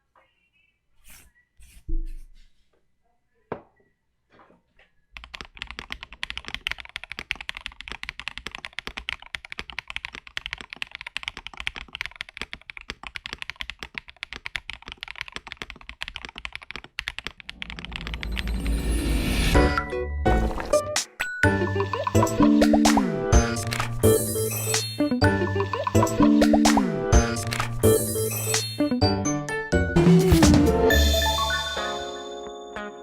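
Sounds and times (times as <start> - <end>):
mechanical keyboard typing: 5.2 - 18.6, 23.5 - 24.0, 27.3 - 27.8.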